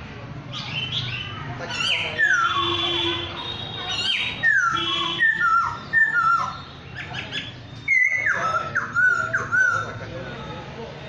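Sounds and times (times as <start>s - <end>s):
bird singing whistled notes: 0.6s - 3.1s, 3.9s - 9.9s.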